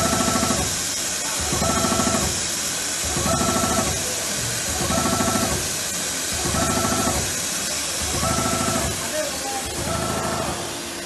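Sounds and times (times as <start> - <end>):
sewing machine stitching: 8.1 - 9.0.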